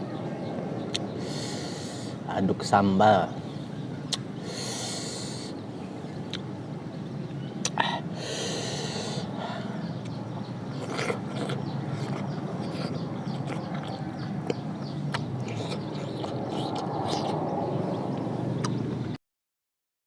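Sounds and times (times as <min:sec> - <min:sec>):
steady background noise: 0:00.0 - 0:19.2
person chewing: 0:10.8 - 0:17.4.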